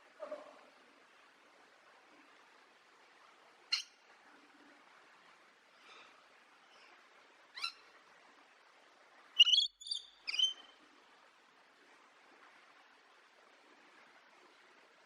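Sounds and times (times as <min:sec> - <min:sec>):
faint background hiss: 0:00.0 - 0:15.0
bird calling: 0:09.4 - 0:10.6.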